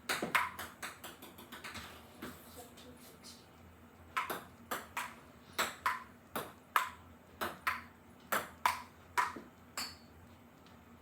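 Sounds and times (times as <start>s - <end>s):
ball clicking off paddles and table: 0.0s - 2.3s, 4.1s - 10.1s.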